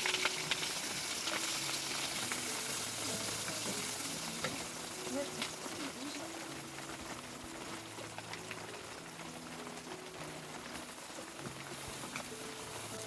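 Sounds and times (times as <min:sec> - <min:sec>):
raindrops ticking: 0:00.0 - 0:13.0
heavy rain: 0:04.1 - 0:13.0.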